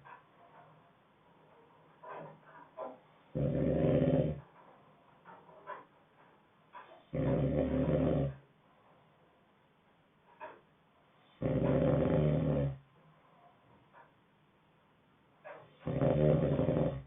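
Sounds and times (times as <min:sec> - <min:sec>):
person snoring: 0:03.4 - 0:04.4, 0:11.4 - 0:12.8, 0:15.9 - 0:17.0.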